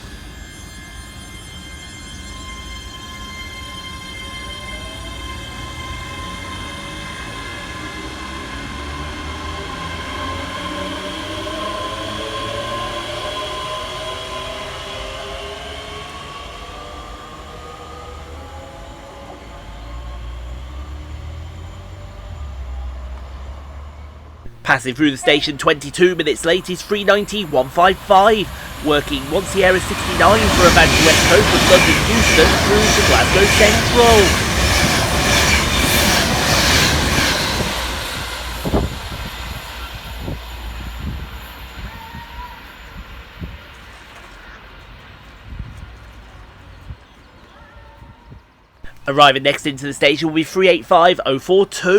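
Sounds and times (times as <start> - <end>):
electric train motor whine: 0.0 - 24.5, 27.9 - 43.8
low train rumble: 0.0 - 51.9.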